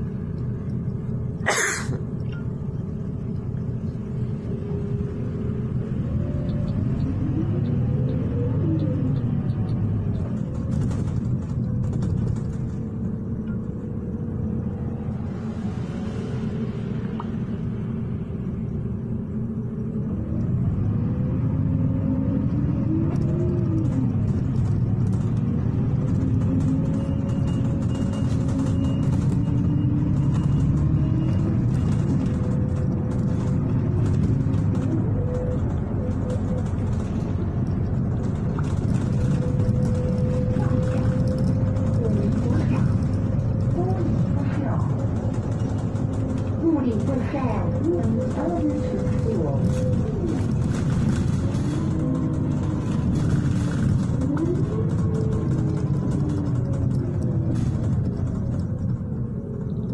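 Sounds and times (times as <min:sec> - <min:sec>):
bus engine rumble: 0:00.0 - 0:59.9
whine drifting in pitch: 0:02.0 - 0:47.1.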